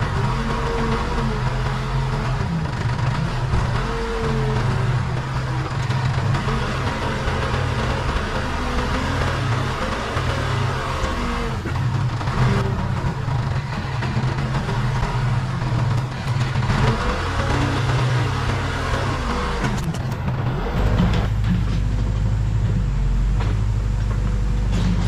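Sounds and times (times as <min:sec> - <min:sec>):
diesel engine under load: 0:00.0 - 0:25.0.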